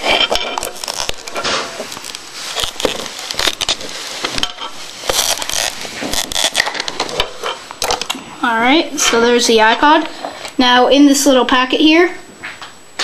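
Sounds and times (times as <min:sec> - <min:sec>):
plastic packaging crackling: 0:00.0 - 0:08.2.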